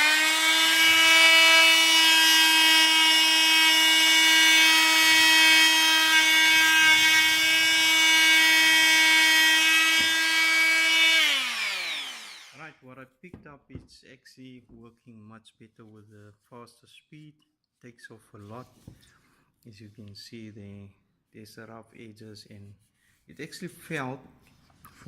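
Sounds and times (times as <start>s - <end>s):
oscillating multitool sanding wood: 0.0s - 12.7s.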